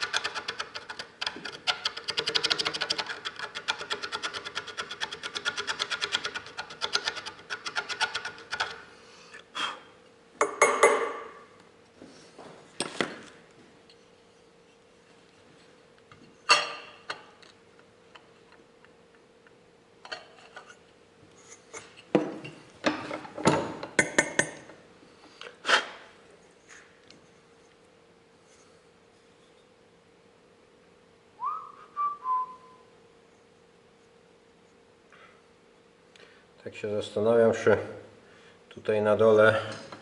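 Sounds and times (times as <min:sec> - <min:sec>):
fast scraping on metal: 0:00.0 - 0:08.8.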